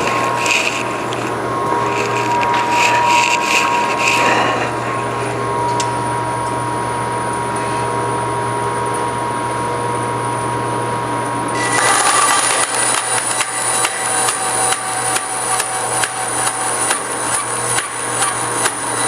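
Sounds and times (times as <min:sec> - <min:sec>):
clicks: 0:00.0 - 0:04.8
bandsaw humming and whining: 0:00.0 - 0:19.0.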